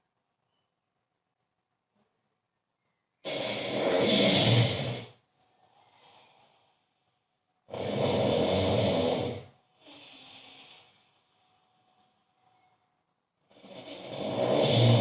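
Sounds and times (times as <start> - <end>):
man snoring loudly: 3.2 - 5.2, 7.7 - 10.8, 13.5 - 15.0
soft breath: 5.4 - 7.5, 9.6 - 12.9.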